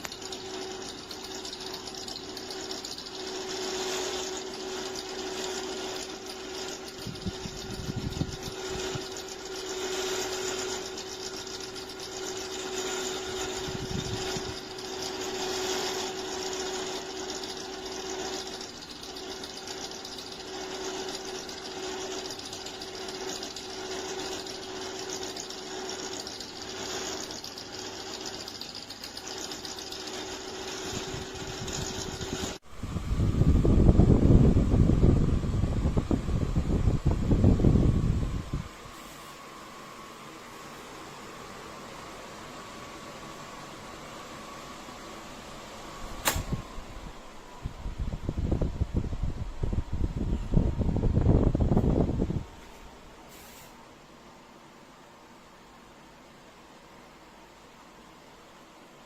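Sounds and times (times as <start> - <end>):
tower fan running: 0.0 - 59.0.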